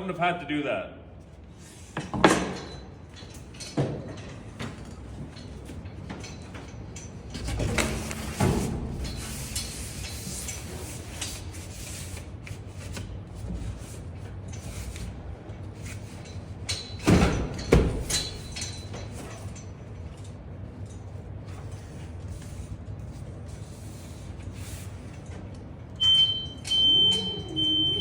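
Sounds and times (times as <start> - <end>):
drywall sheet scraping: 21.7 - 25.1.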